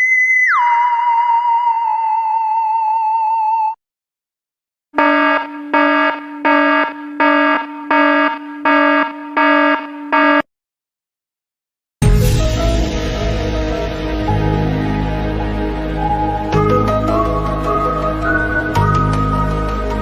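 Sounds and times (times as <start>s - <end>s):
low harsh alarm buzzer pulsing: 5.0s - 10.5s.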